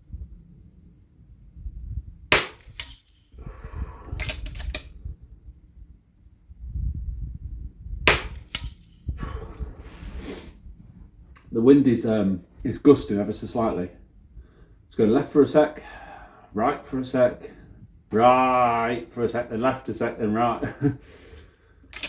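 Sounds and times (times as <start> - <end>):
low wind rumble on microphone: 0.0 - 2.4, 3.3 - 11.5
air rifle shots: 2.3 - 3.2, 8.1 - 8.9.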